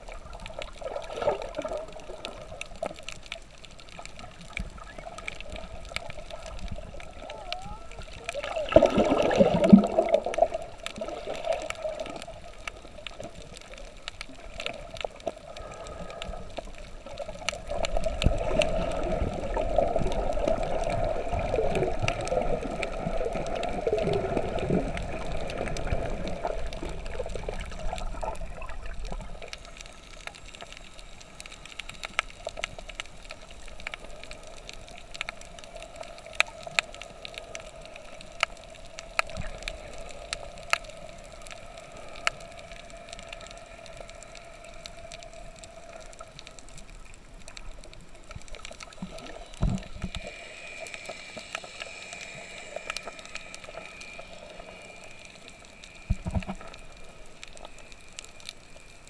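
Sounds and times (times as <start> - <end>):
water gurgling and bubbling: 0.0 - 2.8, 4.4 - 13.3, 17.0 - 29.5
steady hum: 29.5 - 59.0.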